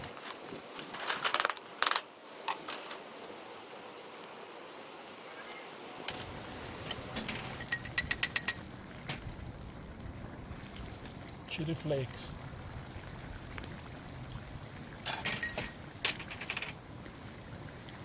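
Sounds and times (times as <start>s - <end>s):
metal clinks and knocks: 6.9s - 8.7s.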